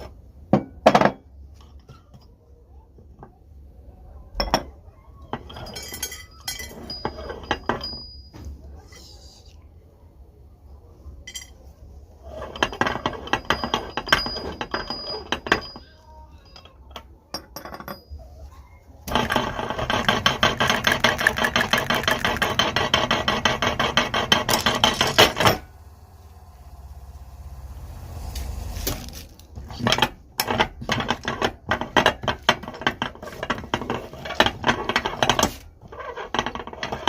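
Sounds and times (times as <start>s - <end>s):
grinder crunching plastic: 19.1s - 25.6s.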